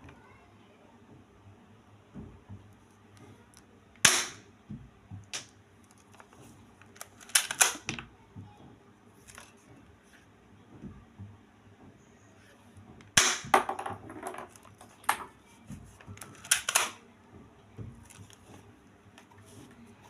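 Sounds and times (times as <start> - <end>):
toy pistol firing: 4.0 - 4.4, 13.2 - 13.5.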